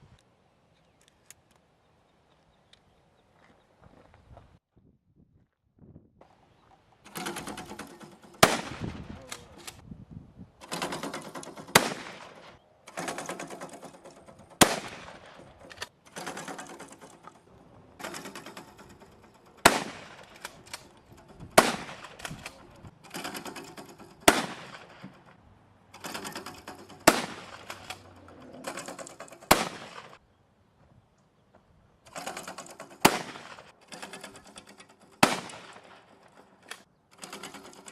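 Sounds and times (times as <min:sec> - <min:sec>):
rapid crackling gunfire: 0:07.1 - 0:09.6, 0:10.6 - 0:17.1, 0:19.6 - 0:20.8, 0:21.5 - 0:25.0, 0:26.0 - 0:28.0, 0:28.6 - 0:30.2, 0:32.1 - 0:33.8, 0:35.2 - 0:36.1
single gunshots: 0:08.4 - 0:09.5, 0:11.7 - 0:12.4, 0:14.6 - 0:15.4, 0:19.6 - 0:20.3, 0:21.6 - 0:22.4, 0:24.3 - 0:24.9, 0:27.0 - 0:27.6, 0:29.5 - 0:30.2, 0:35.2 - 0:35.9.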